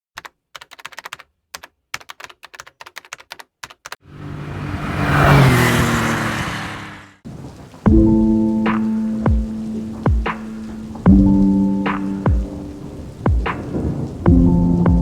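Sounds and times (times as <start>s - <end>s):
typing on computer keyboard: 0.2s - 4.0s.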